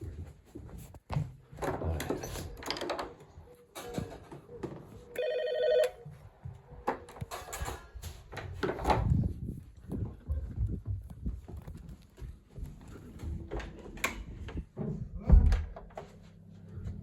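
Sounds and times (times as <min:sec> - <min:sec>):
electronic doorbell ring: 0:05.2 - 0:06.0.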